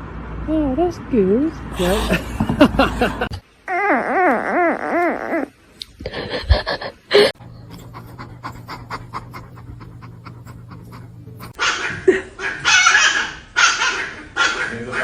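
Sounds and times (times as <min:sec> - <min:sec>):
steady low hum: 0:06.1 - 0:11.6
pet panting rapidly: 0:06.3 - 0:11.6.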